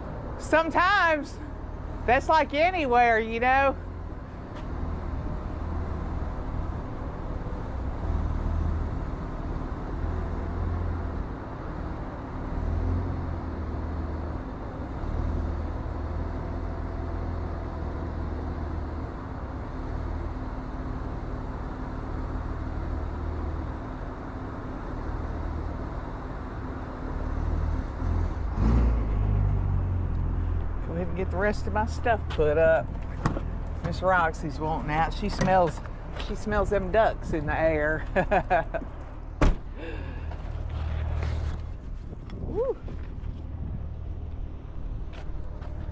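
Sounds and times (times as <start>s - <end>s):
diesel truck engine idling: 0.0s - 12.3s, 29.1s - 42.2s.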